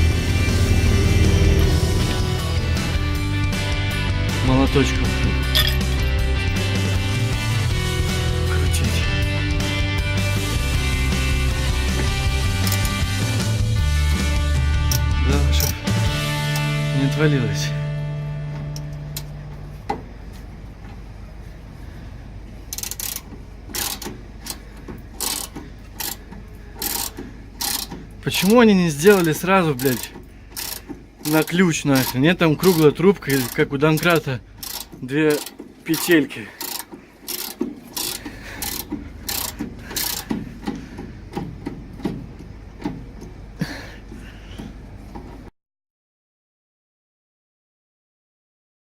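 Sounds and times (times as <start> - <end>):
metal mechanism ratcheting: 5.5 - 6.1, 12.6 - 13.0, 22.7 - 24.6, 25.2 - 26.2, 26.8 - 40.4.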